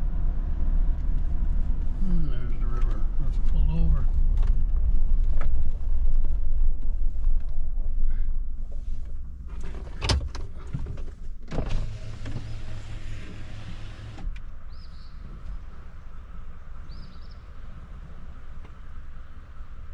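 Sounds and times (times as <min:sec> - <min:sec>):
car road rumble: 0:00.0 - 0:19.9
electric power window motor humming: 0:11.7 - 0:14.3.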